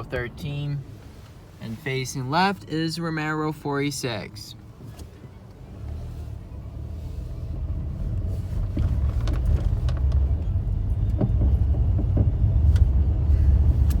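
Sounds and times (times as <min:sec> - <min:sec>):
car engine and tyre rumble: 0:00.0 - 0:14.0
knocks and rattles from bumps: 0:08.6 - 0:12.9.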